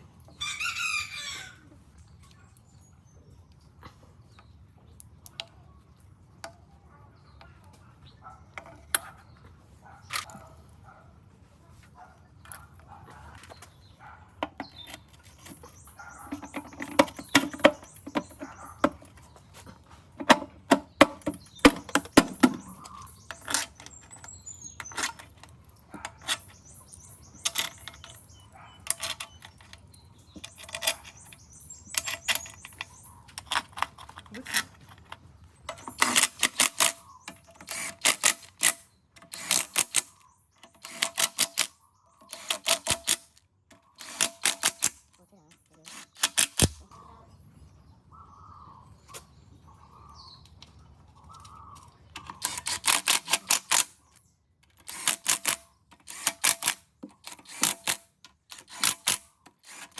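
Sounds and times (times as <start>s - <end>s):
rapid clicking bursts: 35.8s - 45.0s, 54.8s - 59.9s.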